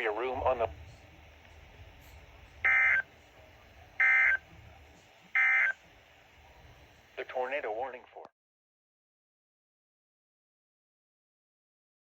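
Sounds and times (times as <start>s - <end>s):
digital data tone bursts: 2.6s - 3.1s, 4.0s - 4.4s, 5.3s - 5.8s.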